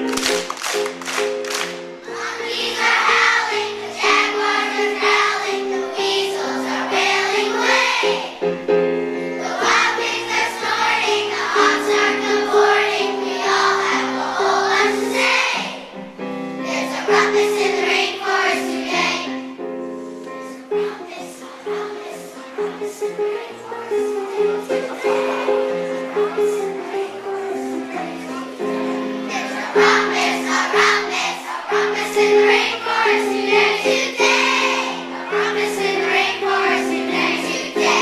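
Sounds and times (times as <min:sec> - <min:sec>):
choir singing: 0:01.5 - 0:38.0.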